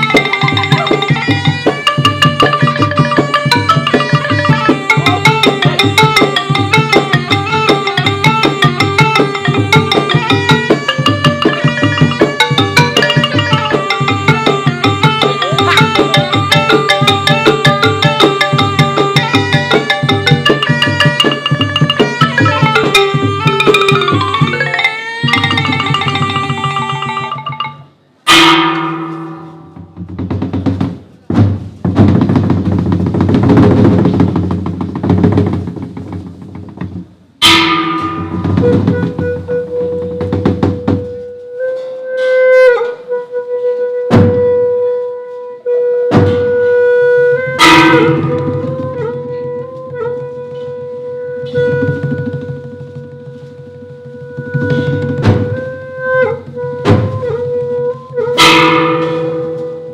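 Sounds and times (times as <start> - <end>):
instrumental music with drumming: 0.0 - 59.9
loud ringing strikes: 19.8 - 30.0, 37.4 - 38.7, 58.4 - 59.9
long held note: 20.7 - 29.8, 37.4 - 40.1, 47.2 - 49.6, 58.3 - 59.9.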